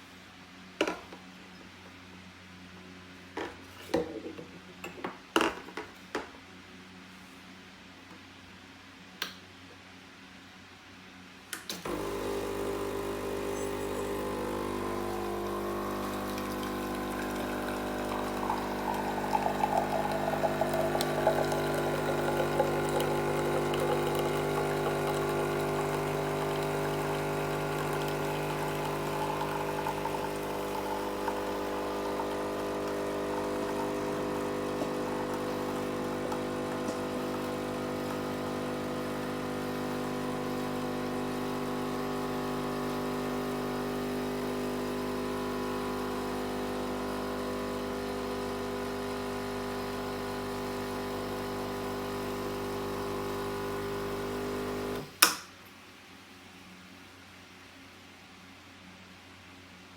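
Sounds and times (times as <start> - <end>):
espresso machine pump humming: 11.8 - 55.2.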